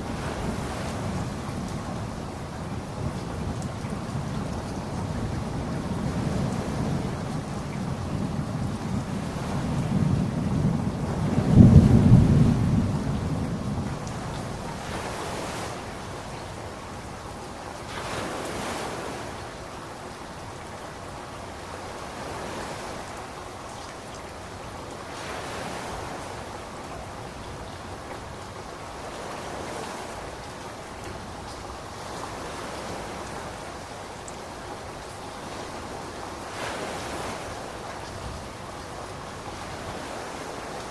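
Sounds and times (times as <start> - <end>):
ocean surf washing in: 0.0 - 2.8, 4.5 - 19.8, 24.6 - 40.9
low thunder rumble: 5.2 - 14.8.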